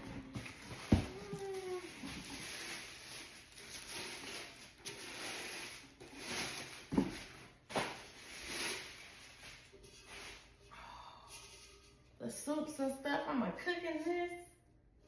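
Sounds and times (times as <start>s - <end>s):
packaging rustling: 0.0s - 10.6s.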